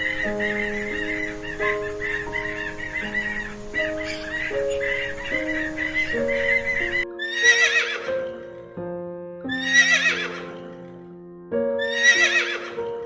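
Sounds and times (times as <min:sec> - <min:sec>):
repeated animal call: 0:00.0 - 0:08.5, 0:09.5 - 0:11.0, 0:11.8 - 0:13.0
background music: 0:00.0 - 0:13.0
horse whinnying: 0:07.2 - 0:08.5, 0:09.5 - 0:11.0, 0:11.8 - 0:12.9.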